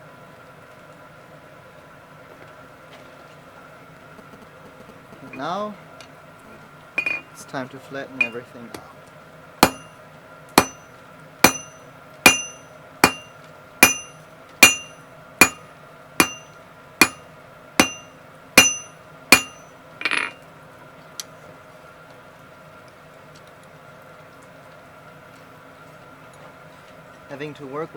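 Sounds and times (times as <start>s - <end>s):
hammer blows on anvil: 7.0s - 7.4s, 8.2s - 8.5s, 9.6s - 10.0s, 10.6s - 20.4s.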